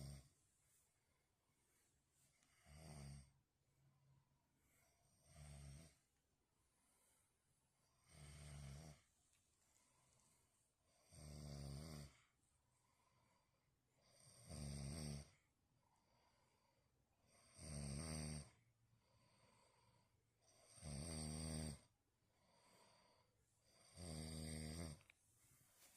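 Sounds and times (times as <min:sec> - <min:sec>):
man snoring: 0:00.0 - 0:00.3, 0:02.5 - 0:03.3, 0:05.1 - 0:06.0, 0:08.0 - 0:09.1, 0:11.0 - 0:12.3, 0:14.0 - 0:15.4, 0:17.3 - 0:18.6, 0:20.5 - 0:21.9, 0:23.7 - 0:25.1.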